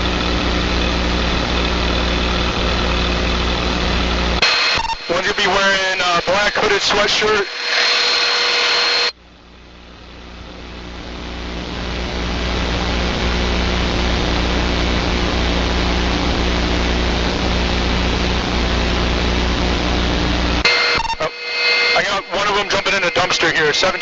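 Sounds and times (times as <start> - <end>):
helicopter engine and rotor drone: 0.0 - 9.2, 20.6 - 24.0.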